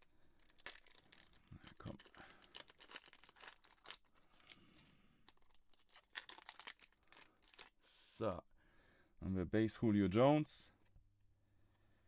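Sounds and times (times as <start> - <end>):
wrapper crinkling and crackling: 0.0 - 7.8.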